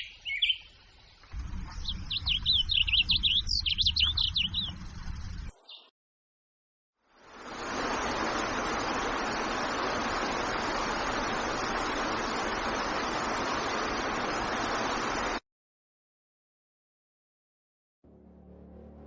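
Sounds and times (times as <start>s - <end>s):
running water rushing: 7.2s - 15.4s.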